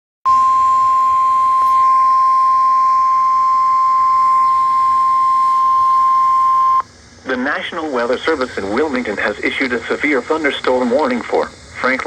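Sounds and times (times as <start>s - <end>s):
steady warning alarm tone: 0.3s - 6.8s.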